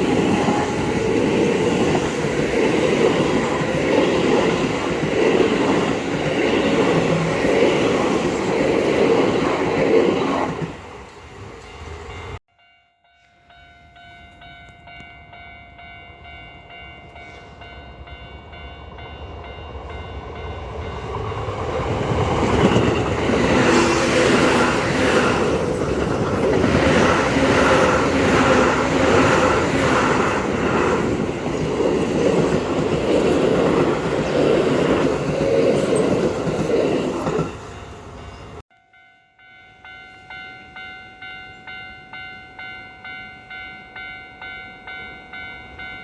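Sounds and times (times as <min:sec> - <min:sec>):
crossing warning bell ringing: 0:00.0 - 0:09.5, 0:11.6 - 0:46.0
electric train passing: 0:00.0 - 0:46.0
wheels clacking over rail joints: 0:20.8 - 0:37.6.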